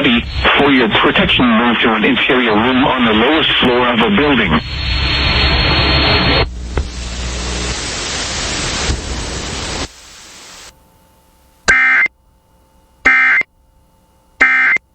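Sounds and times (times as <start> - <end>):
harsh data burst tones: 0.0 - 10.7, 11.7 - 12.1, 13.1 - 13.4, 14.4 - 14.8
radio static hiss: 0.0 - 10.7.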